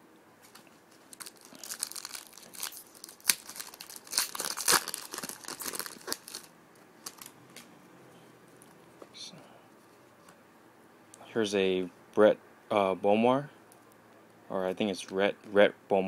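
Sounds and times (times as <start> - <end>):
packaging crinkling and rustling: 0.4 - 7.7.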